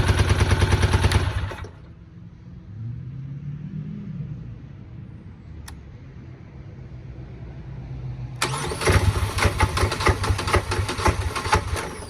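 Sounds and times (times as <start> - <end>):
starter cranking engine: 0.0 - 1.9, 8.4 - 12.0.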